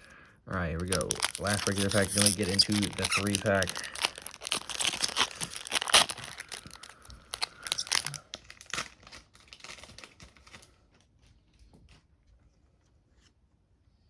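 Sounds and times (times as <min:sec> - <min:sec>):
foil wrapper tearing and crinkling: 0:00.8 - 0:11.0.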